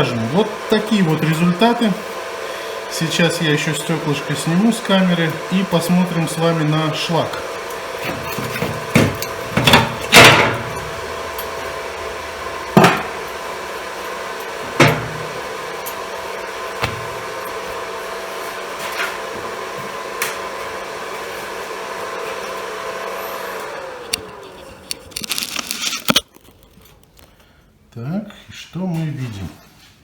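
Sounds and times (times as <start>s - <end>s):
welding inverter humming: 0.0s - 26.3s
sharp knocks and clunks: 8.0s - 11.0s, 12.7s - 13.2s, 14.7s - 15.4s, 16.8s - 17.3s.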